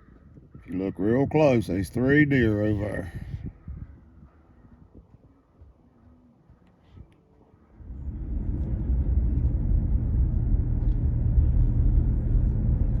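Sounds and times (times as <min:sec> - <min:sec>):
vehicle engine and road rumble: 0:07.7 - 0:13.0.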